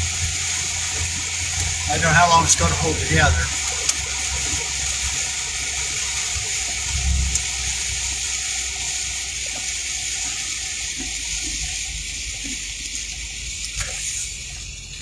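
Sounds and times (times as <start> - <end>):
low engine rumble: 0.0 - 8.9
rain and tyres on wet road: 0.0 - 15.0.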